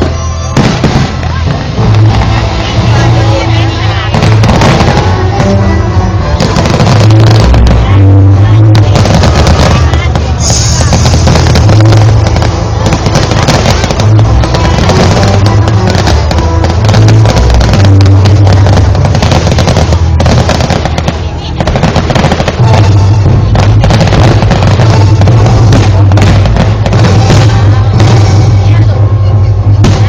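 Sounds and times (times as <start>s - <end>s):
fireworks bursting and crackling: 0.0s - 30.0s
loud music with heavy bass: 21.5s - 30.0s.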